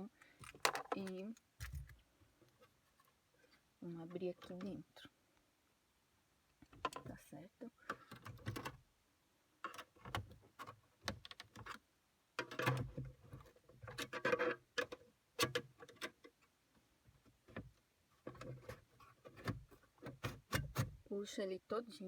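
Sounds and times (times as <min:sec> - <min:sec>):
clicks and knocks of plastic casing: 0:00.3 - 0:02.7.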